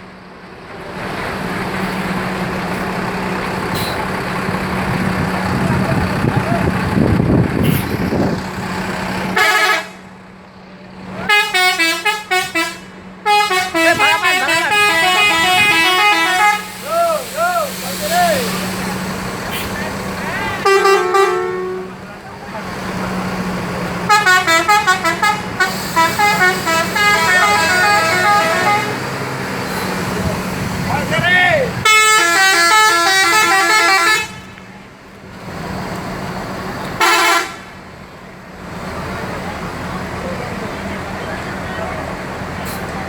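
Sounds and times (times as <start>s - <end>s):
low engine hum: 0.0s - 33.4s
musical air horn: 9.4s - 10.0s, 11.2s - 16.9s, 20.6s - 22.0s, 24.1s - 29.1s, 31.8s - 34.5s, 37.0s - 37.7s.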